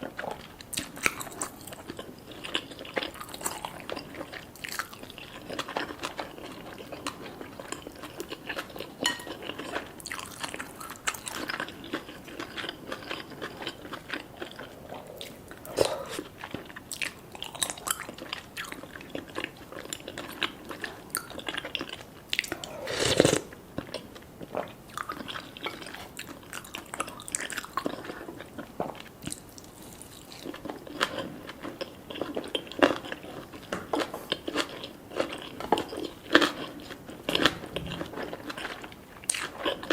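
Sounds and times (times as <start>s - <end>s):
wet mouth noises: 14.4s - 16.4s, 22.3s - 23.6s.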